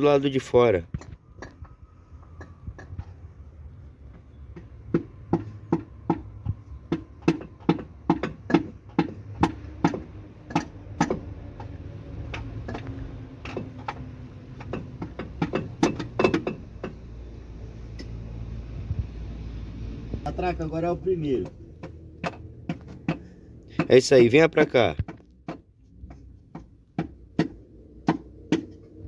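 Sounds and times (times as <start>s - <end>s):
hammer knocking on metal: 4.1s - 17.0s, 21.3s - 24.2s, 24.9s - 28.8s.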